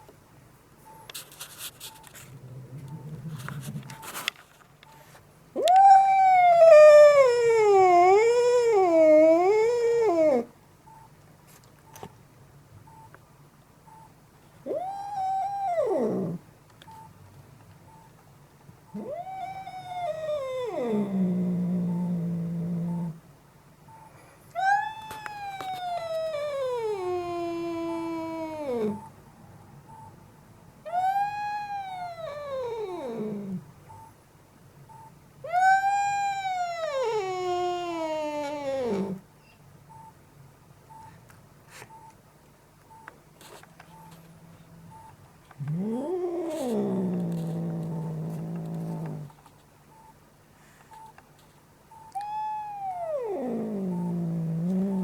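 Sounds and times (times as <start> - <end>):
cat yowling: 5.6 - 10.5, 14.7 - 16.4, 19.0 - 21.2, 24.6 - 29.1, 30.9 - 33.5, 35.5 - 39.2, 52.2 - 55.0.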